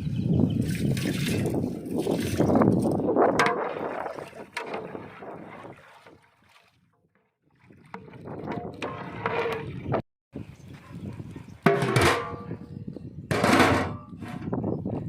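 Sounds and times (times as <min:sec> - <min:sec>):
wind rumble on microphone: 0:00.0 - 0:05.8, 0:07.6 - 0:15.0
water sloshing in pot: 0:00.6 - 0:10.0.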